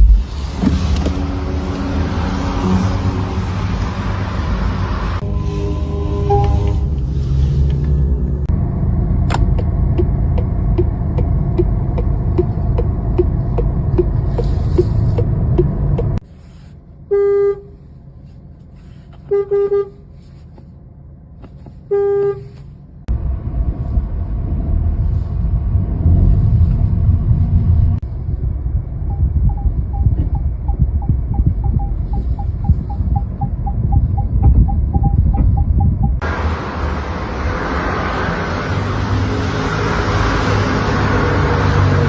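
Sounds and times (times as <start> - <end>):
car horn beeps: 5.2 - 6.9, 17.1 - 17.8, 19.2 - 20.0, 21.8 - 22.6
low rumble with regular tick: 6.1 - 17.0, 22.6 - 36.4.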